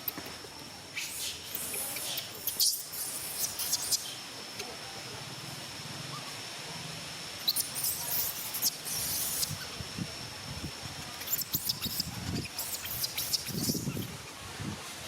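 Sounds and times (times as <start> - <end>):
rustling and scratching on leaves: 1.0 - 4.2, 7.4 - 9.9, 10.9 - 15.0.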